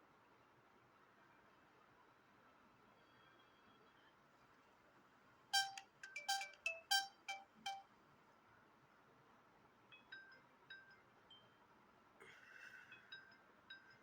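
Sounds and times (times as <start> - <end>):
phone ringtone bell-like melody: 5.6 - 7.8.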